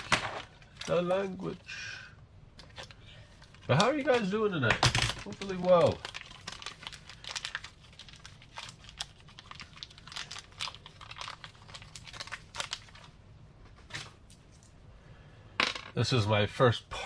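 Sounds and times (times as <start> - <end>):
small parts clicking and crinkling: 2.6 - 13.1.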